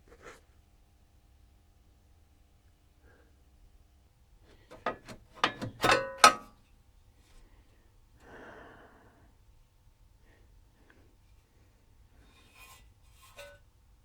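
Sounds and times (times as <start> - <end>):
metal parts clicking and clanking: 4.7 - 6.5.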